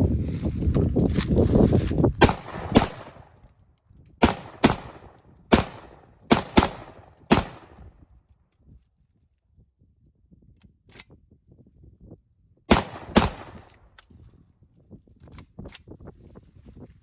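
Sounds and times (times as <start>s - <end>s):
gunshots with echo: 2.2s - 3.3s, 4.2s - 7.8s, 12.7s - 13.7s.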